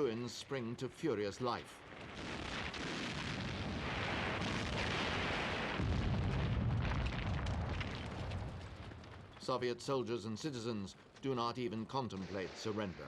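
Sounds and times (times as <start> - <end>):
crackling gunfire: 1.8 - 9.6, 12.2 - 13.0
explosions: 1.9 - 9.4.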